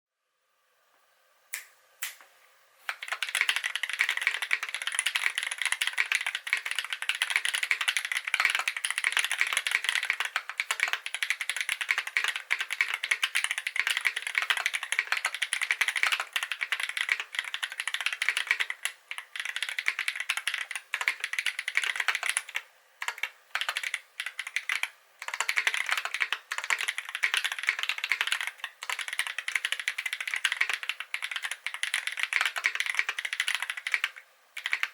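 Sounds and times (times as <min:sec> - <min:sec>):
fast mechanical keyboard typing: 0:02.9 - 0:34.9.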